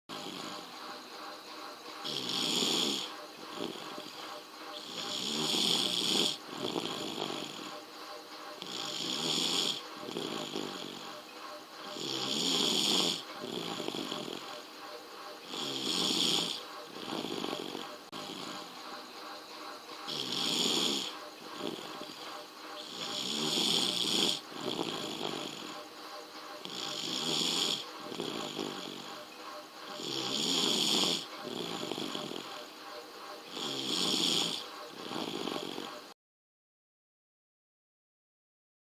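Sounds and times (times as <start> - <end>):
baby snoring: 0.1 - 1.1, 2.0 - 4.2, 4.8 - 7.8, 8.6 - 11.2, 11.9 - 14.7, 15.4 - 19.1, 19.8 - 22.2, 22.8 - 25.8, 26.6 - 29.1, 29.9 - 32.5, 33.5 - 36.0.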